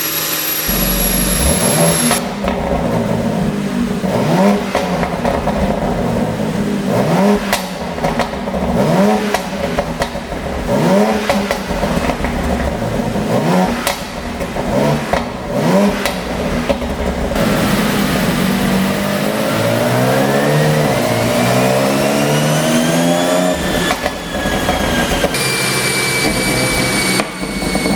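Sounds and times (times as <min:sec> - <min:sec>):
car engine revving: 0:00.6 - 0:27.9
exhaust pops and crackles: 0:00.7 - 0:17.6.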